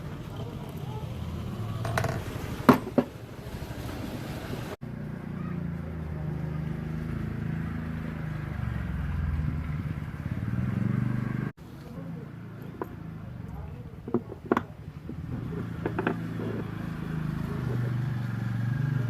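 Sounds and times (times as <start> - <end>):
low engine hum: 0.0 - 19.0
sharp metal knocks: 1.9 - 3.2.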